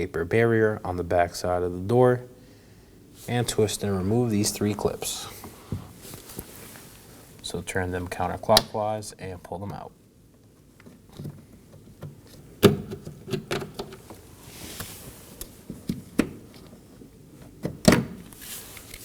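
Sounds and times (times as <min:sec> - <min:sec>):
soft hiss: 0:00.0 - 0:10.8, 0:14.1 - 0:15.8, 0:18.2 - 0:19.0.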